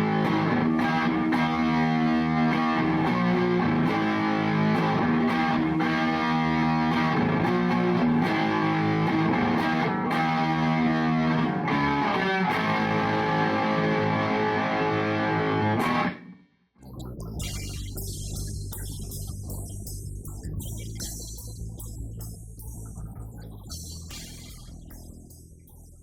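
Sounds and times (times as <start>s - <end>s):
distorted electric guitar chords: 0.0s - 26.0s
quieter music: 16.8s - 26.0s.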